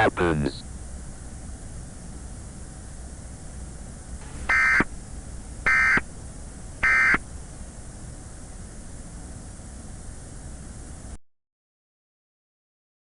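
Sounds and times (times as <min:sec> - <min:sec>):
static hiss: 0:00.0 - 0:11.2
buzzy digital data bursts: 0:04.2 - 0:04.9.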